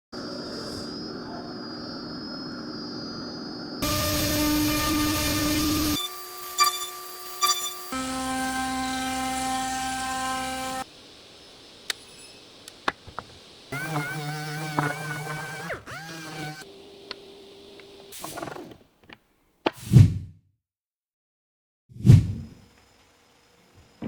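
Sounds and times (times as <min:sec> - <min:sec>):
router whining through plywood: 0:03.8 - 0:10.8, 0:13.1 - 0:18.8.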